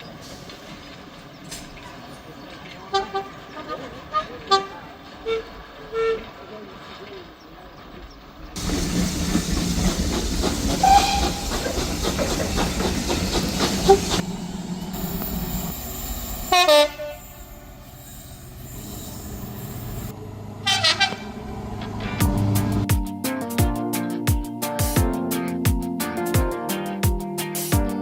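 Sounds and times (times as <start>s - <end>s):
train horn blasts: 2.9s - 3.4s, 4.1s - 6.3s, 10.8s - 11.5s, 16.5s - 17.6s, 20.6s - 21.4s
train wheels clattering over rail joints: 8.6s - 14.2s.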